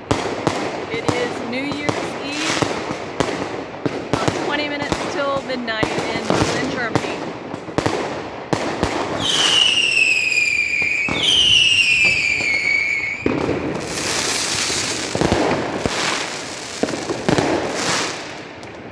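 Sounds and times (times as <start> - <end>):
firecrackers crackling: 0.0 - 18.9
firework bangs: 0.0 - 18.9
firework whistles falling in pitch: 9.2 - 14.8.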